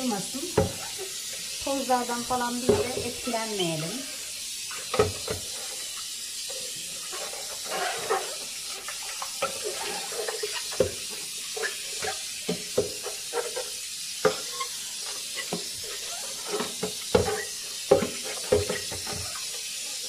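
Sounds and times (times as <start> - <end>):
tap water running into sink: 0.0 - 20.0
plastic parts knocking on sink: 2.6 - 3.3, 4.9 - 5.5, 16.6 - 19.2.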